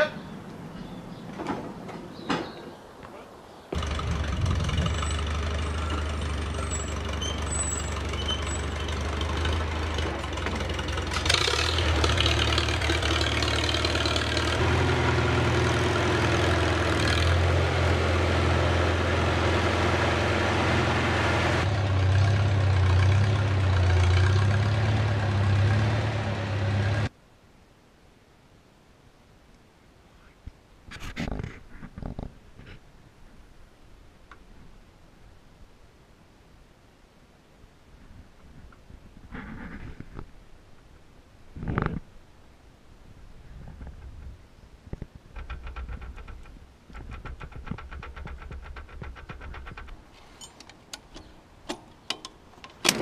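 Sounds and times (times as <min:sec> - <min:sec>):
tractor engine running: 0:03.8 - 0:27.1, 0:45.3 - 0:53.0.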